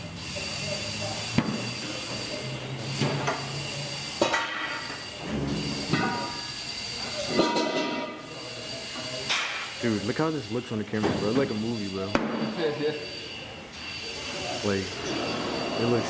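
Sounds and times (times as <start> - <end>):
air hissing: 0.0 - 12.7.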